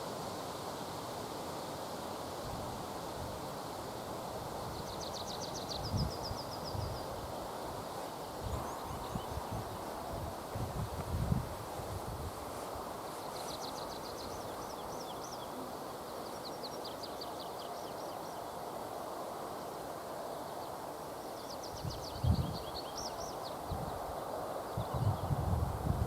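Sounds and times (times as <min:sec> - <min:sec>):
forest ambience hiss: 0:00.0 - 0:26.0
songbird singing: 0:04.6 - 0:11.4, 0:13.0 - 0:18.8, 0:19.8 - 0:25.5.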